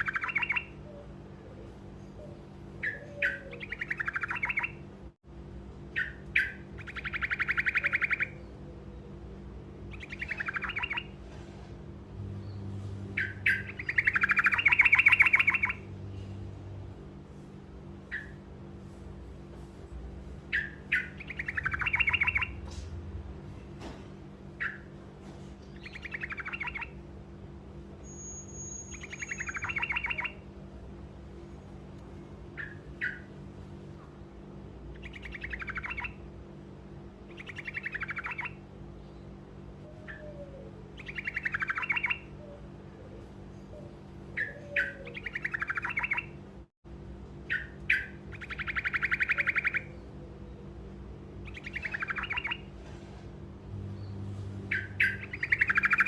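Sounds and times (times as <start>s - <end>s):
bird singing trills: 0.0s - 4.9s, 5.9s - 11.2s, 12.3s - 16.3s, 18.0s - 18.4s, 20.4s - 22.8s, 24.5s - 24.9s, 25.6s - 27.0s, 28.0s - 30.5s, 32.4s - 33.4s, 34.9s - 36.3s, 37.3s - 46.4s, 47.4s - 52.7s, 53.8s - 56.0s
steady low hum: 0.0s - 56.0s.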